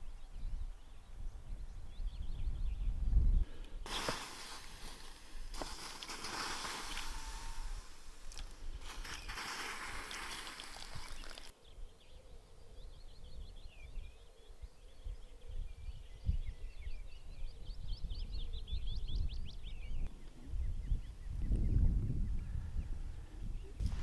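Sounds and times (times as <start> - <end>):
songbird singing: 0.0 - 24.0
rustling noise: 3.9 - 11.5.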